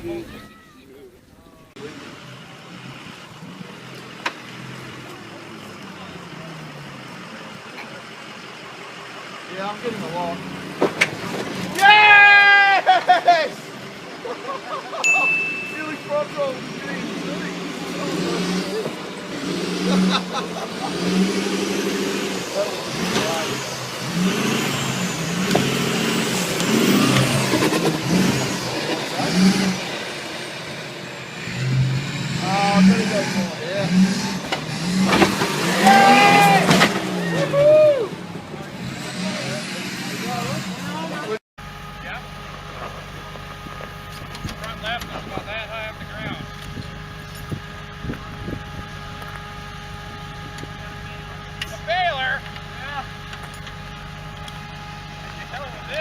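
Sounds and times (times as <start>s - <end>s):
vehicle engine running: 1.7s - 11.8s, 12.9s - 56.0s
knocks and clatter: 34.4s - 35.6s.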